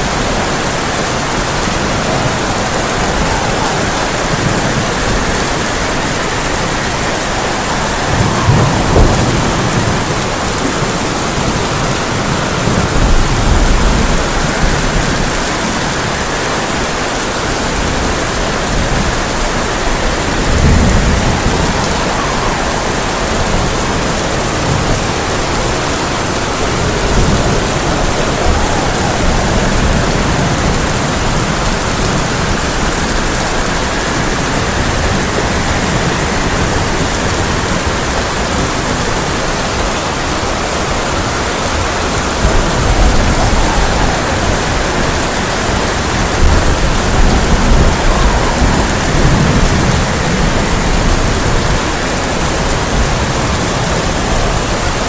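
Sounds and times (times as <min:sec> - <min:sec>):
heavy rain on a tin roof: 0:00.0 - 0:55.0
rolls of thunder: 0:00.0 - 0:55.0.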